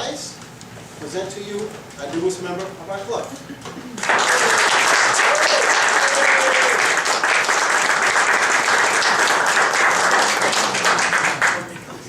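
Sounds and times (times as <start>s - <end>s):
audience applauding: 4.0s - 11.8s.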